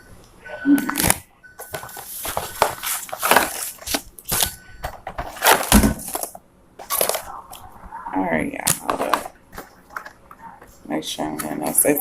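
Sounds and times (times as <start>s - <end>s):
packaging crinkling and rustling: 1.0s - 7.6s, 8.7s - 10.8s.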